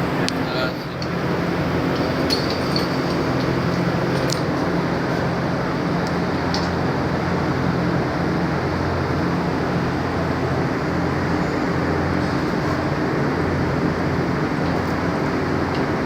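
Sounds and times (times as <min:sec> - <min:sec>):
electric pump motor humming: 0:00.0 - 0:06.0.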